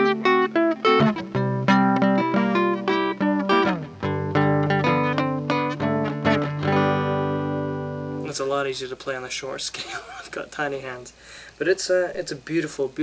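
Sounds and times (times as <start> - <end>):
electric guitar picked riff: 0.0 - 8.3
guitar chord ringing: 0.0 - 8.3.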